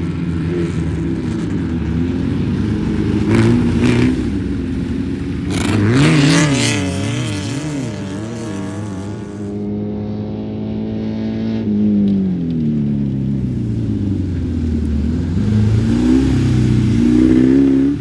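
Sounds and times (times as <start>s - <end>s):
car engine revving: 0.2s - 9.6s, 11.4s - 18.0s.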